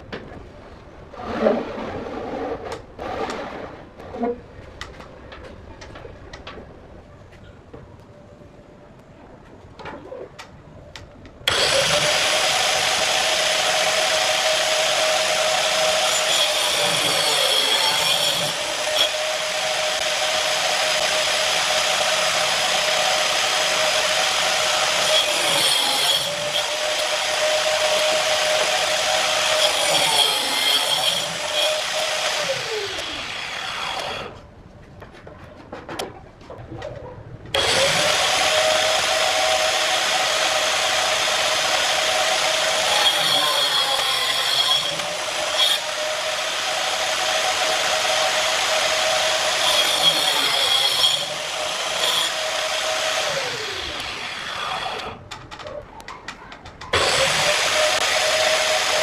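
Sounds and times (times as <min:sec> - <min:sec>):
angle grinder cutting wood: 0:11.5 - 0:34.4, 0:37.6 - 0:55.2, 0:56.9 - 0:59.0.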